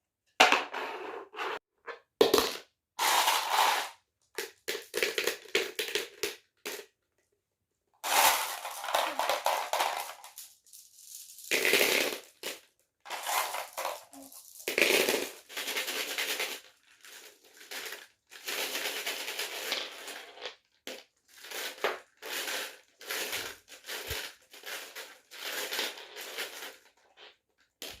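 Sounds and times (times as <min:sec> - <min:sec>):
marbles rolling down wooden run: 0:08.0 - 0:27.0.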